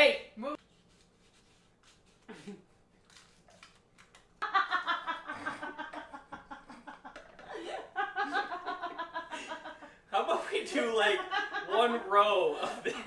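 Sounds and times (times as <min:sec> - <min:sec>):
person laughing: 0:04.4 - 0:09.7.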